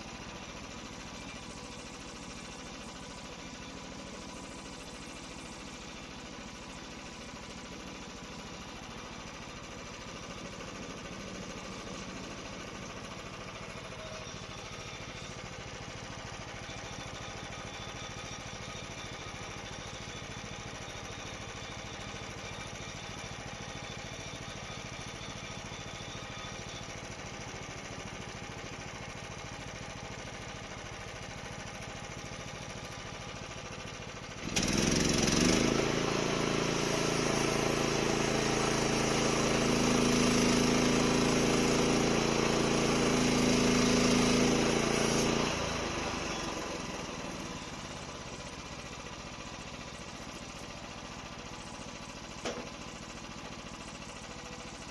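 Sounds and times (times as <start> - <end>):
sawmill engine running: 0.0 - 54.9
saw cutting with hissing whine: 34.5 - 49.1.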